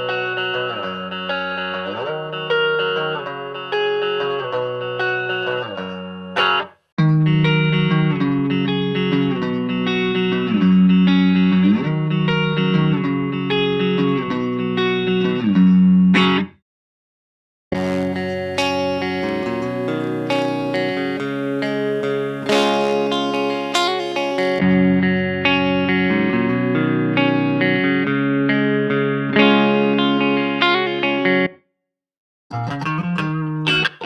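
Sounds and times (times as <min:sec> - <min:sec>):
electric guitar chord riff: 0:17.7 - 0:31.5.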